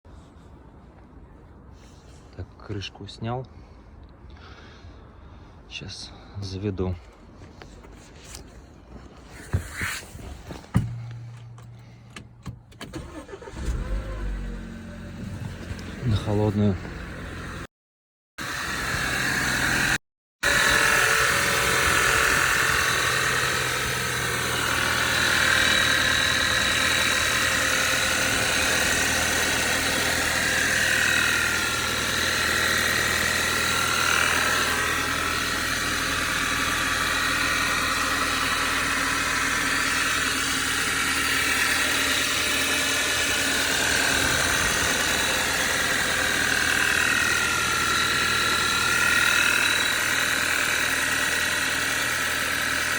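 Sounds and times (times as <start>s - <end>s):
car engine idling: 10.5s - 17.7s, 18.7s - 52.9s
wavering engine whine: 20.5s - 52.3s
engine knock: 20.5s - 52.9s.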